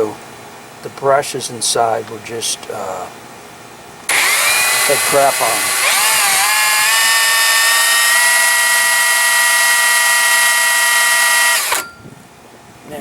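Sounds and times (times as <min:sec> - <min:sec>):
electric drill whining: 0:04.1 - 0:12.0.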